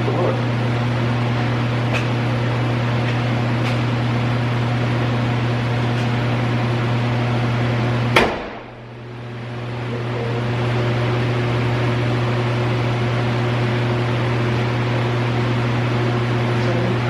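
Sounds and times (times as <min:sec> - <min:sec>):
low hum: 0:00.0 - 0:17.0
truck hood slamming shut: 0:08.2 - 0:08.7.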